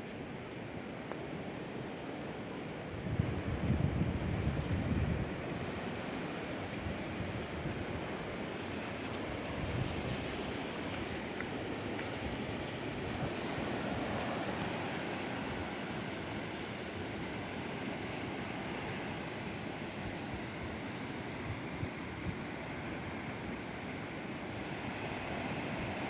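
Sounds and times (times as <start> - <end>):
ocean surf washing on beach: 0.0 - 26.0
wind buffeting microphone: 2.7 - 19.2.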